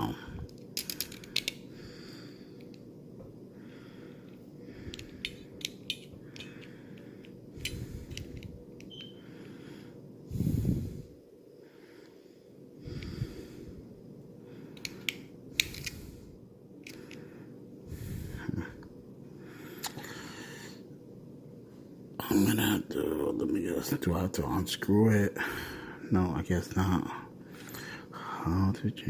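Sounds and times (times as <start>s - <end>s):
person breathing heavily through nose: 0.0s - 2.7s, 3.5s - 5.6s, 6.2s - 8.6s, 9.2s - 20.9s, 25.4s - 26.1s, 27.4s - 28.4s.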